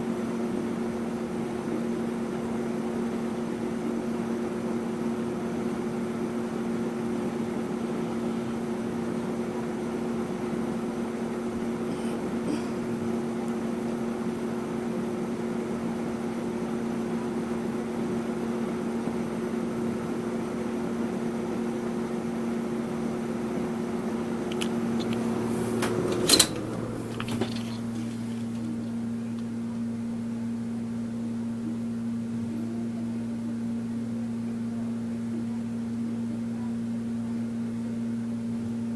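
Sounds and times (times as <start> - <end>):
box fan hum and air rush: 0.0 - 35.6
fan switch click: 24.4 - 28.7.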